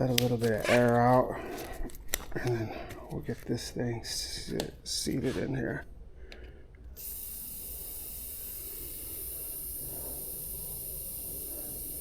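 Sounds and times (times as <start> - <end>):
air hissing out of inner tube: 6.9 - 12.0.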